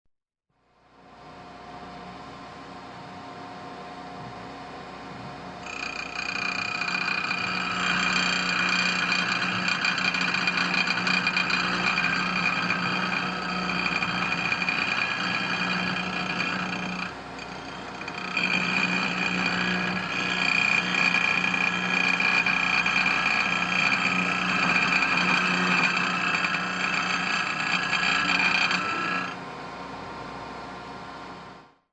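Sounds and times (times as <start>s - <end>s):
chisel scraping spinning wood: 5.6s - 29.4s
wood lathe humming: 5.6s - 29.4s.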